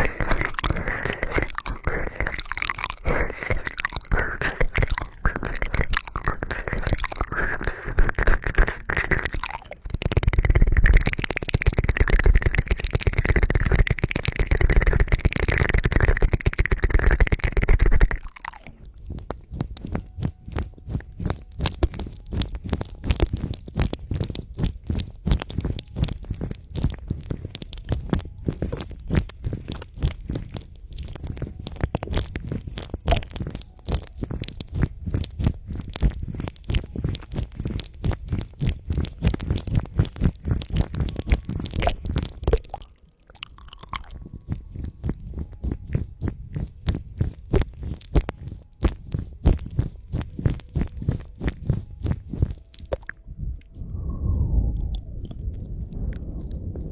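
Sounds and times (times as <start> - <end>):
scratching and rubbing on microphone: 0.0 - 42.7, 44.1 - 53.3
sharp crackling clicks: 0.0 - 45.2, 52.6 - 53.8
deep rumble: 43.6 - 56.9.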